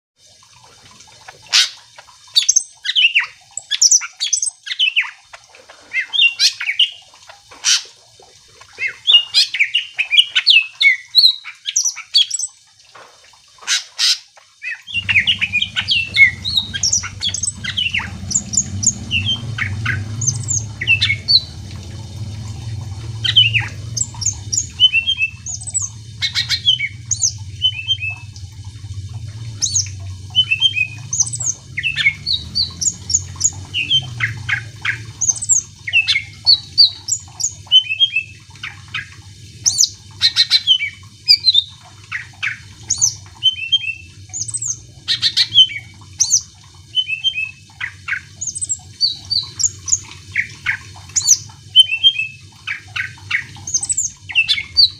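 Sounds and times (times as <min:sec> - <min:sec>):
bird singing chirps and whistles: 0:13.7 - 0:21.5, 0:23.2 - 0:28.3, 0:29.6 - 0:38.4, 0:42.5 - 0:50.0, 0:51.2 - 0:54.9
steady low hum: 0:14.8 - 0:46.8.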